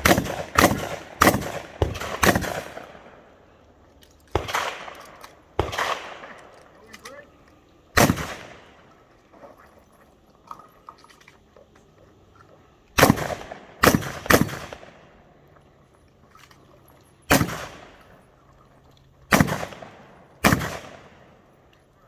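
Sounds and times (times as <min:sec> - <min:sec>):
shotgun shots echoing: 0:00.0 - 0:03.3, 0:04.3 - 0:06.6, 0:08.0 - 0:08.8, 0:13.0 - 0:15.1, 0:17.3 - 0:18.0, 0:19.3 - 0:21.4.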